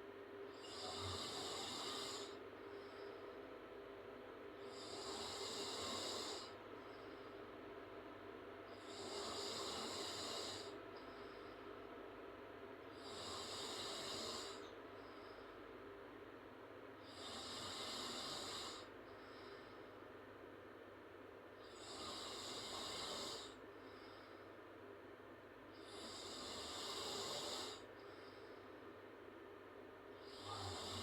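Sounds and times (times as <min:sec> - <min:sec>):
woman snoring: 0:00.6 - 0:02.4, 0:04.7 - 0:06.6, 0:08.8 - 0:10.8, 0:13.0 - 0:14.6, 0:17.1 - 0:18.9, 0:21.7 - 0:23.6, 0:25.8 - 0:27.9, 0:30.2 - 0:31.0.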